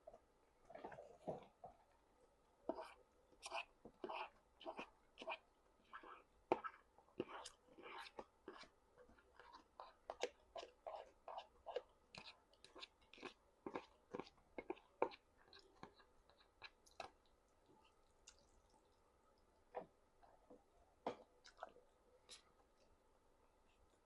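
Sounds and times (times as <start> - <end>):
chewing with wet mouth clicks: 11.4 - 19.0, 21.3 - 22.4.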